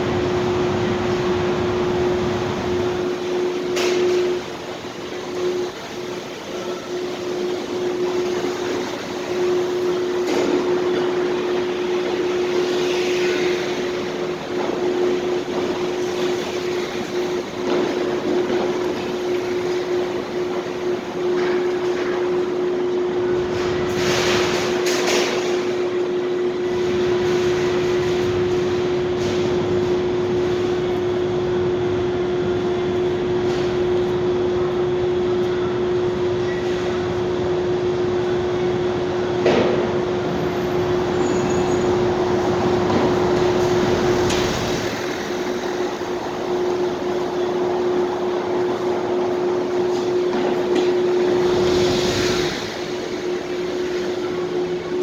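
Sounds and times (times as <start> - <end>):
rushing noise with hum: 0.0 - 55.0
mechanical drone and rushing air: 37.0 - 55.0.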